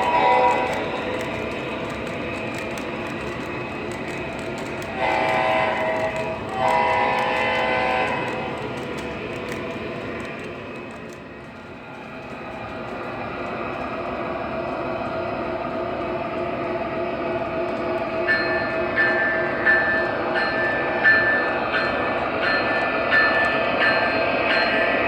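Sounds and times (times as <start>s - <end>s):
model locomotive running rumble: 0.0s - 25.0s
air horn blasts: 5.0s - 8.3s.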